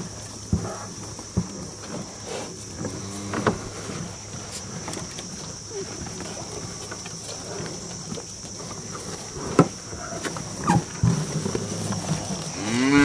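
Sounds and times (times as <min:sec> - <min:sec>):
cattle moving about: 0:00.0 - 0:13.0
cow mooing loudly: 0:12.5 - 0:13.0.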